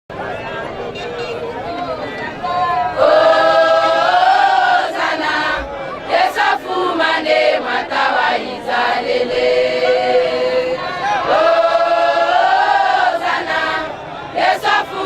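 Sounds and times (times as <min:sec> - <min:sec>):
choir singing a hymn: 0:00.2 - 0:15.0.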